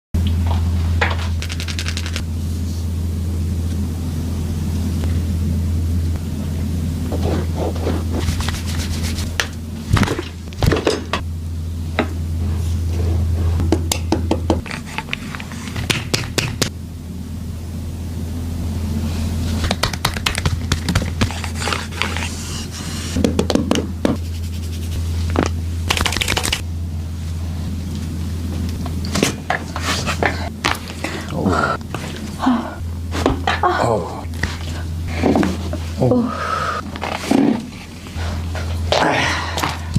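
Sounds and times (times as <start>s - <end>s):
steady low hum: 0.2s - 39.9s
hands rubbing on clothing: 7.2s - 9.5s, 24.2s - 25.3s.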